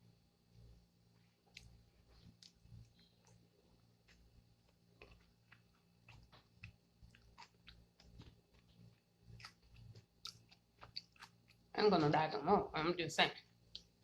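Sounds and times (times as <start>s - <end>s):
faint wet chewing: 1.1s - 11.7s, 13.7s - 14.0s.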